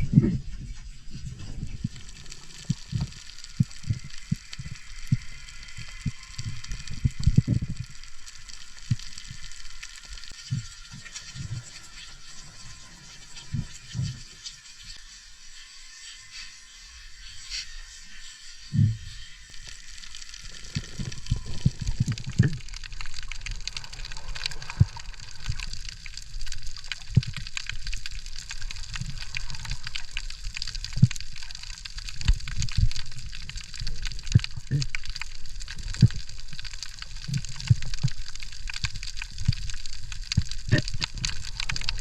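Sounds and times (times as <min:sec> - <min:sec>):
fine underwater crackle of clicks: 0:00.0 - 0:42.0.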